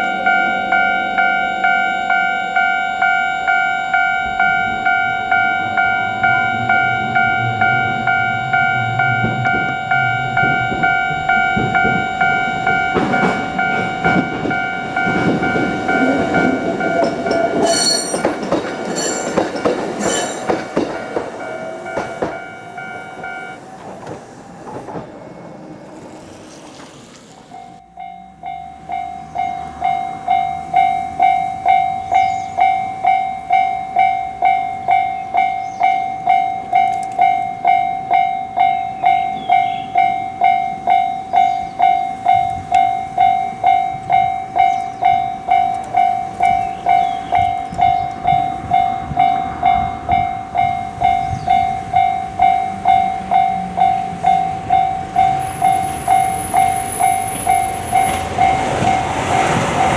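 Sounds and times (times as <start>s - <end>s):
thin high tone: 0.0s - 19.4s
level-crossing warning bell: 0.0s - 24.1s, 27.4s - 59.9s
train rumble: 0.0s - 59.9s.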